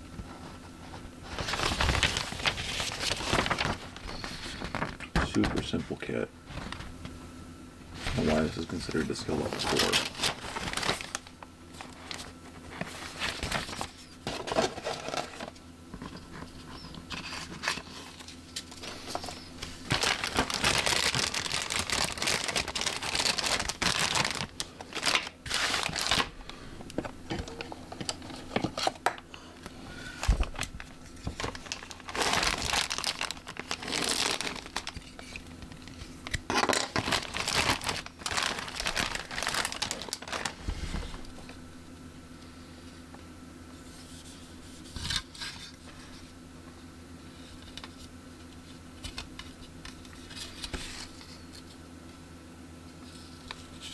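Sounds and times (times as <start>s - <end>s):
plastic packaging crinkling: 1.2s - 5.8s, 8.1s - 29.2s, 30.1s - 41.6s.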